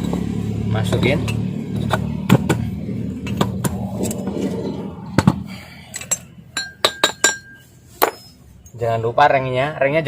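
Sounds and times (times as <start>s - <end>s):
low hum: 0.0s - 6.8s
sharp metal clinks ringing: 5.9s - 8.4s.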